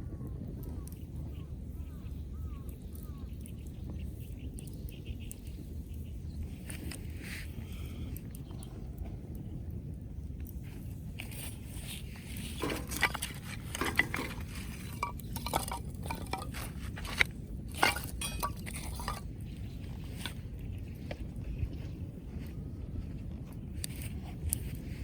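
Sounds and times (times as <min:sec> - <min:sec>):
hard objects clinking and knocking: 0:12.6 - 0:19.3.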